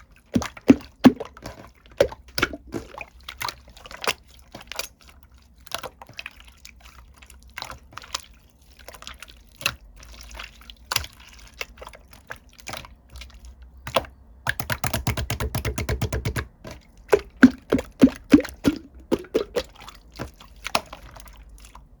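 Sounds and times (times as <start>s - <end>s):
slime bubbles popping: 0.4s - 3.2s, 14.5s - 21.0s.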